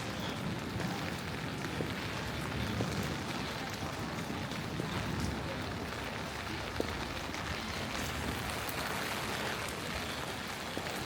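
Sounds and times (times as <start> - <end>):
rain falling: 0.0 - 11.0.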